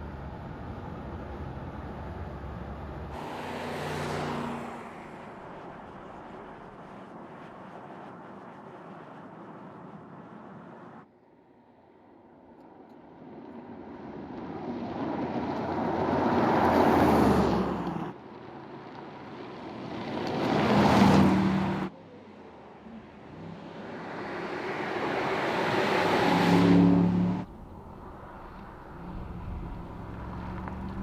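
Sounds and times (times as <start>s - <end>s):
sports car driving by: 3.0s - 6.6s, 23.3s - 31.0s.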